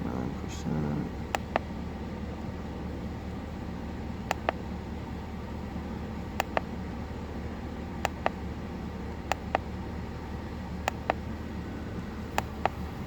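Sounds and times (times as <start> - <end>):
sharp clicks: 4.3 - 4.6, 6.4 - 6.7, 9.3 - 9.6, 10.9 - 11.2.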